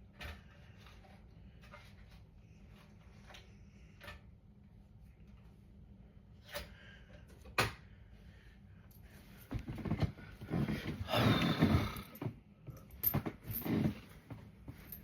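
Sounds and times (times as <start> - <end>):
person making raspy vocal sounds: 11.0 - 12.1.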